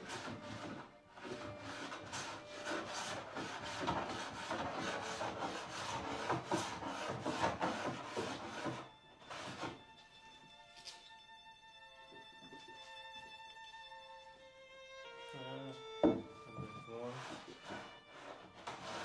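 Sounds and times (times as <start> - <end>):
hand plane shaving wood: 0.0 - 9.9, 15.7 - 19.0.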